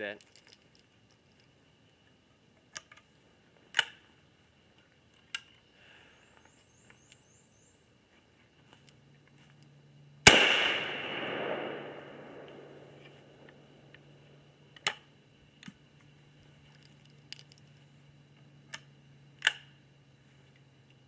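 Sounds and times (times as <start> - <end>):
shotgun shot echoing: 10.2 - 13.7.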